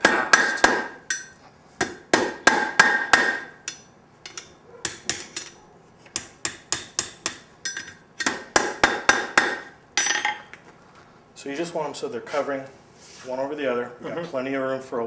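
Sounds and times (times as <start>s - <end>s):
hammer striking metal on anvil: 0.0s - 5.6s, 6.2s - 10.6s.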